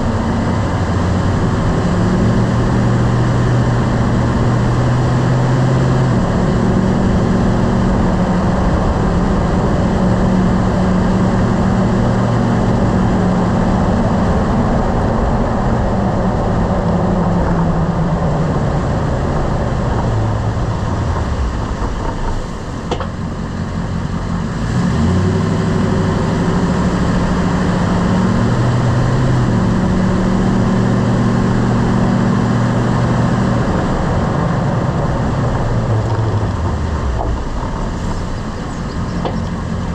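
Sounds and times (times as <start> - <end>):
truck engine and road noise: 0.0 - 39.9
brake clunk: 21.0 - 23.3, 36.0 - 39.6.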